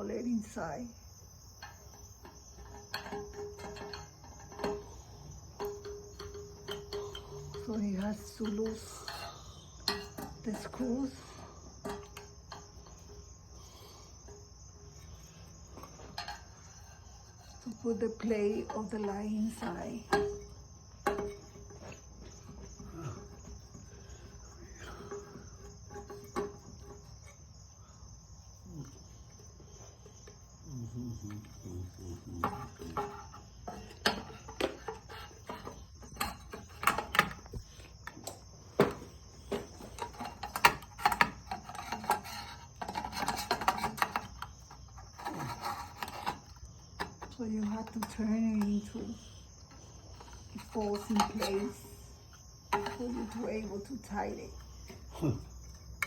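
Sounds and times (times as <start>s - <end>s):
metal parts clicking and clinking: 39.5s - 46.4s.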